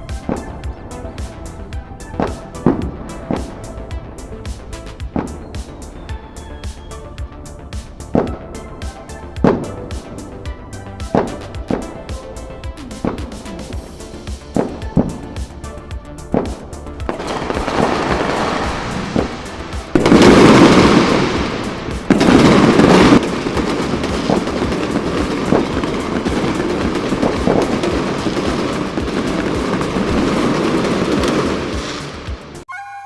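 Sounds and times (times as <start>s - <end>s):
fireworks crackling: 0.0s - 32.6s
loud firework bursts: 11.0s - 32.6s.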